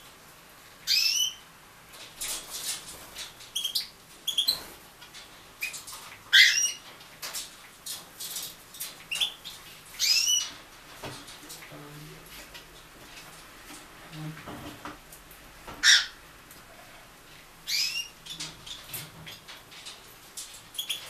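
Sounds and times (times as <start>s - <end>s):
birds chirping: 0.8s - 1.4s, 3.5s - 4.7s, 5.6s - 6.9s, 9.1s - 10.6s, 15.8s - 16.2s, 17.6s - 19.5s, 20.7s - 21.0s
wings rustling and fluttering: 1.8s - 21.0s.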